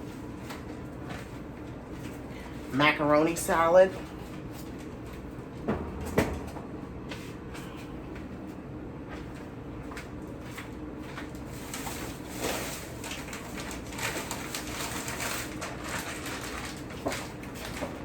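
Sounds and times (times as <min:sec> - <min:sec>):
steady low hum: 0:00.0 - 0:14.0
food packages being handled: 0:07.0 - 0:18.0
plastic bags rustling: 0:11.0 - 0:18.0.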